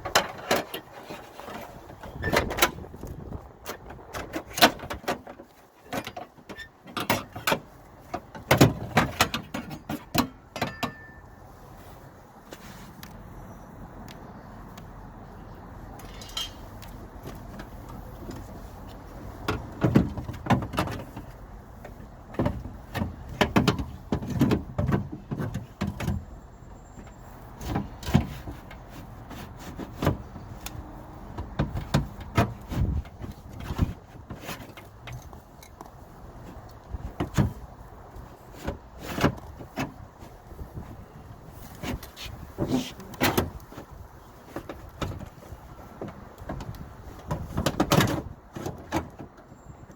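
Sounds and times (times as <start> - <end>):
metal and plastic parts rattling: 16.0 - 17.7.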